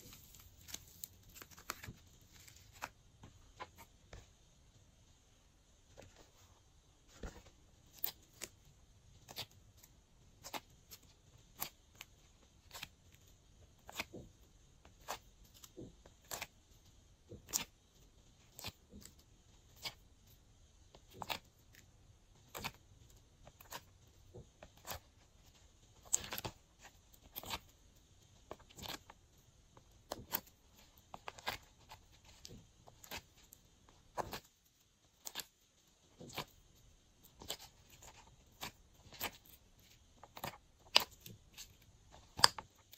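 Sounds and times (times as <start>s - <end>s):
slime squishing with clicks and pops: 7.8s - 42.9s.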